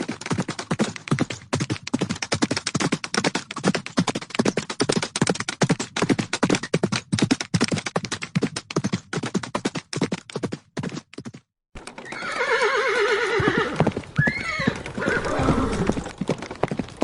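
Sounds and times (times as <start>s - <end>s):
rapid percussive hoof beats: 0.0s - 12.2s.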